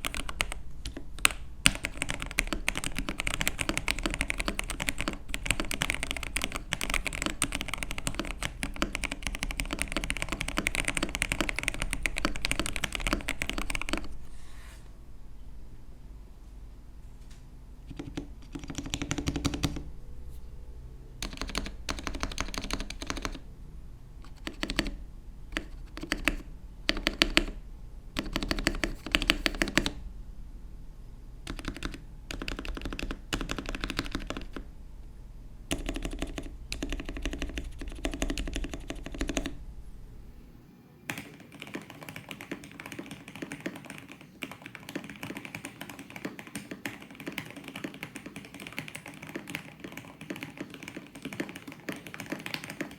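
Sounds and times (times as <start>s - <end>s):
fast mechanical keyboard typing: 0.0s - 14.1s, 17.9s - 19.9s, 21.2s - 23.4s, 24.2s - 27.6s, 28.2s - 30.0s, 31.5s - 34.7s, 35.7s - 39.6s, 41.1s - 52.9s.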